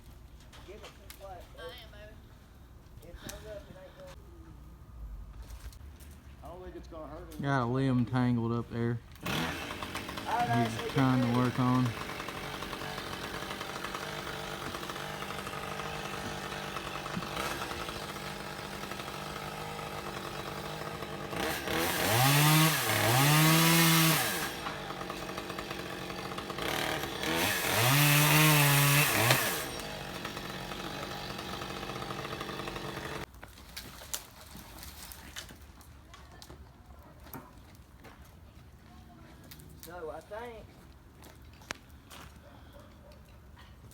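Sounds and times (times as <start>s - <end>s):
chainsaw idling: 9.2s - 33.3s
chainsaw revving: 9.2s - 33.3s.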